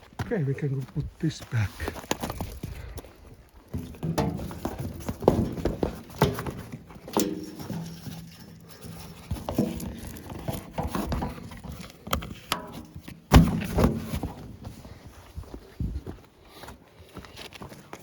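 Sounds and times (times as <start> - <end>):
heavy thud: 3.8 - 8.0
metal cover knocking and clunking: 3.8 - 14.1
ringing metal scrape: 4.0 - 11.7.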